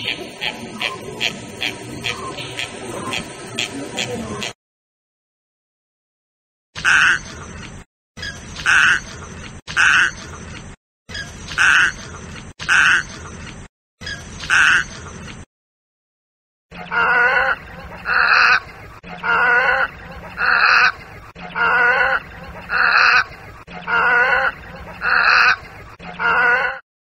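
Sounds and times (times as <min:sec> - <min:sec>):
bird calling roughly: 0:00.0 - 0:04.6, 0:06.8 - 0:07.3, 0:08.2 - 0:09.1, 0:09.7 - 0:10.2, 0:11.1 - 0:12.0, 0:12.6 - 0:13.2, 0:14.0 - 0:14.9, 0:16.8 - 0:26.8.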